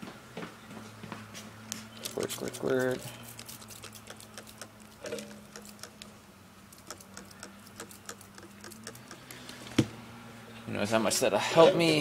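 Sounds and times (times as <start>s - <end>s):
tools and metal parts clicking: 2.0s - 6.0s, 6.8s - 9.3s.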